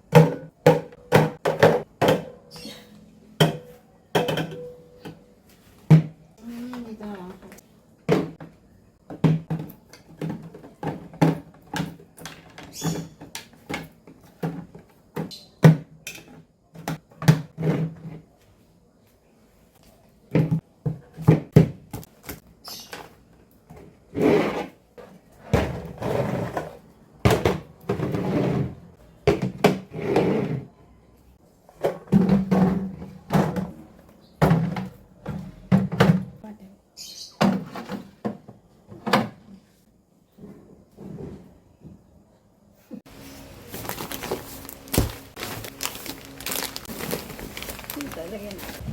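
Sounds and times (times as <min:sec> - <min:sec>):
knocks and clatter of containers: 0:00.0 - 0:02.4, 0:03.4 - 0:05.2, 0:08.1 - 0:18.2, 0:31.7 - 0:36.4
rustling: 0:43.1 - 0:48.9.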